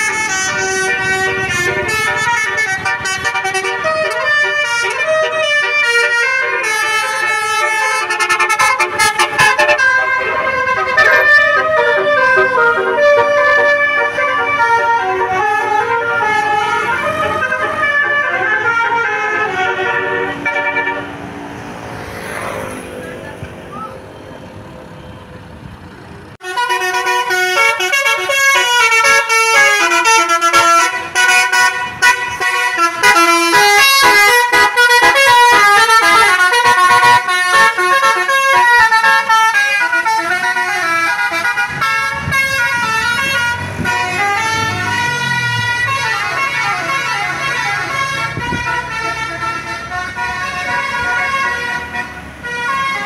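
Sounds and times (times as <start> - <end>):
multi-tone air horn melody: 0.0 - 21.2, 26.4 - 53.0.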